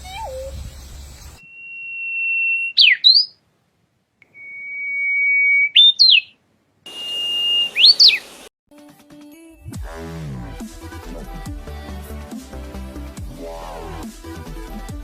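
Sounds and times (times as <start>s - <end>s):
bird whistled call: 1.4s - 3.4s, 4.2s - 8.5s.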